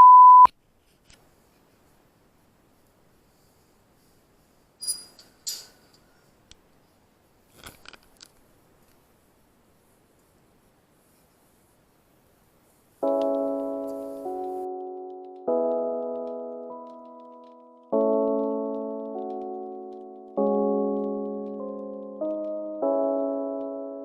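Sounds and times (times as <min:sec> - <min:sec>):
faint room hiss: 0:00.5 - 0:24.0
piano chords: 0:13.0 - 0:24.0.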